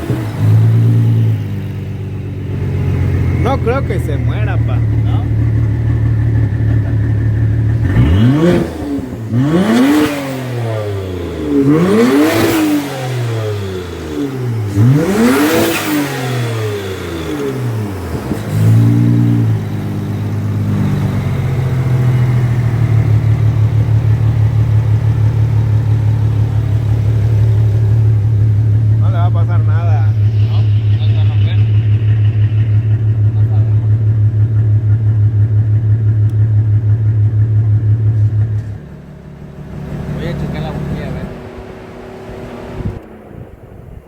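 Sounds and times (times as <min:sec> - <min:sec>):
engine idling with pulsing beat: 0:00.0 - 0:10.0, 0:17.3 - 0:42.0
car engine revving: 0:00.0 - 0:44.0.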